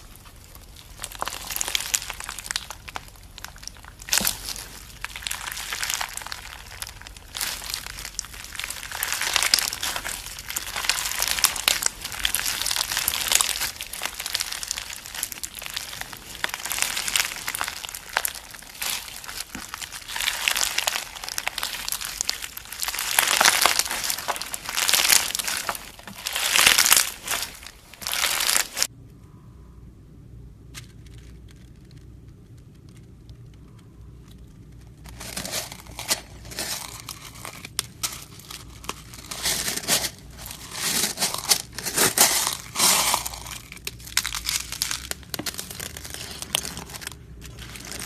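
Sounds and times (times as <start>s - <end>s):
slime squeezed crackling pops: 0.2s - 28.9s.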